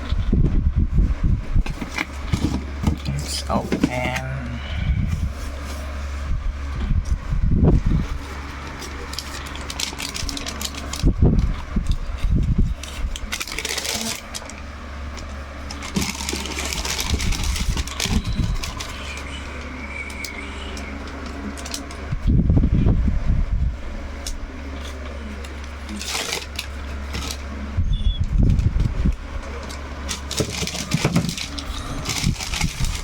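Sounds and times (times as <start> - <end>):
steady low hum: 0.0 - 33.0
paper rustling and crinkling: 7.9 - 22.1, 24.8 - 27.7, 28.4 - 33.0.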